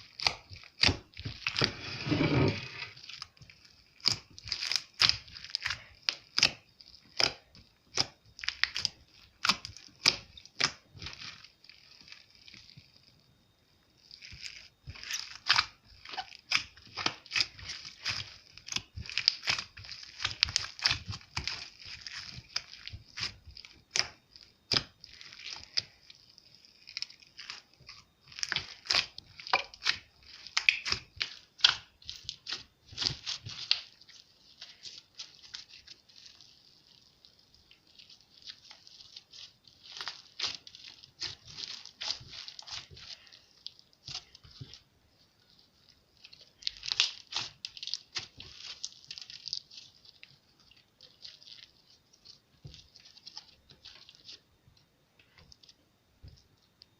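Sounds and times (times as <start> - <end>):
slime squished by hand: 14.0 - 54.4.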